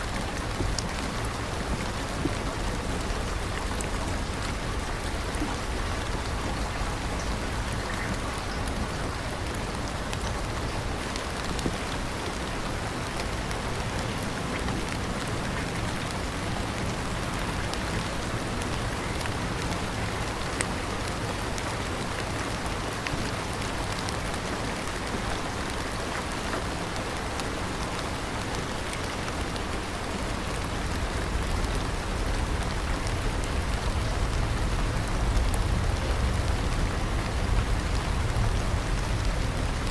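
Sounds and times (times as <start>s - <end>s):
steady rain hissing: 0.0s - 39.9s
raindrop ticks: 13.0s - 39.9s.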